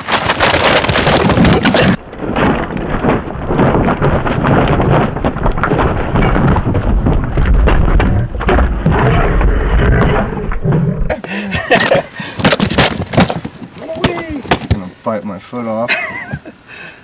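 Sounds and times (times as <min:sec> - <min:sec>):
wind buffeting microphone: 0:01.1 - 0:11.1.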